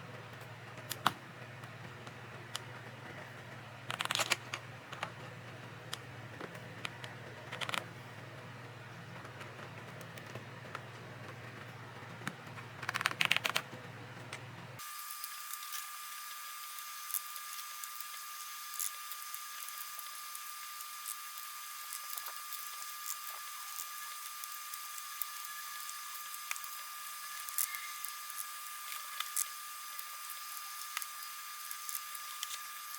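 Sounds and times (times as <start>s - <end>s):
keyboard parts clicking: 3.9s - 5.1s, 12.8s - 13.6s.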